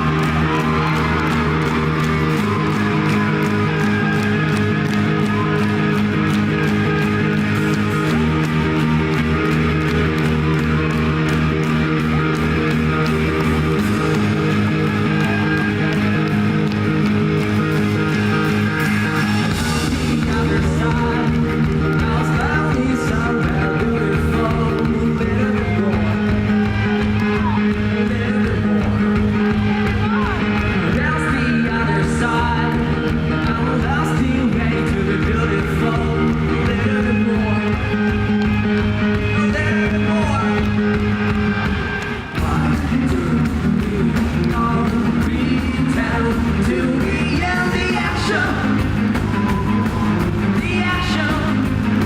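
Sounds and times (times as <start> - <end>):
bass and drums: 0.0 - 52.0
electric guitar: 0.0 - 52.0
man singing: 18.9 - 41.2, 42.3 - 52.0.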